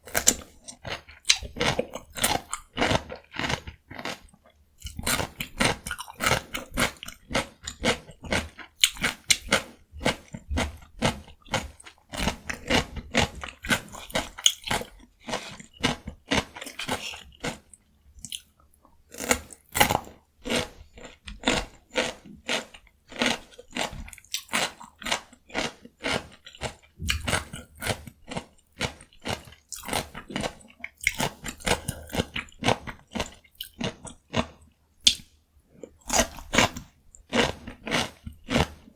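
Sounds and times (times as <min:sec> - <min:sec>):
crisp cucumber crunching: 0:00.0 - 0:38.9.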